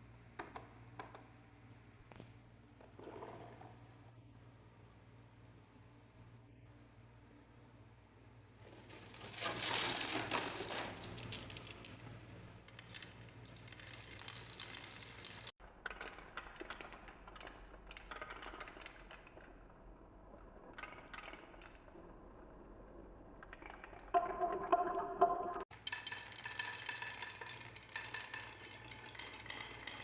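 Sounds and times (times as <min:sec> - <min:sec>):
balls clattering down marble run: 0:23.5 - 0:30.0.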